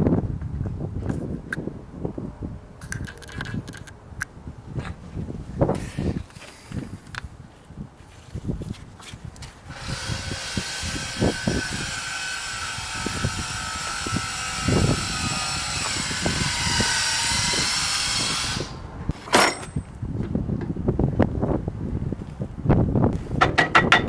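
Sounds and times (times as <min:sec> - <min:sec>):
small electric power tool running: 0:09.7 - 0:18.8.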